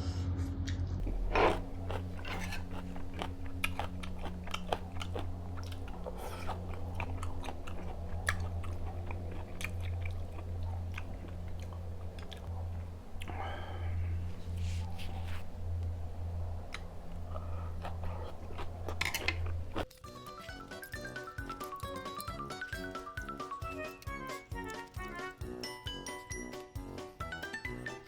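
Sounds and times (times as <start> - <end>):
steady low hum: 0.0 - 20.0
wet chewing sounds: 1.0 - 26.5.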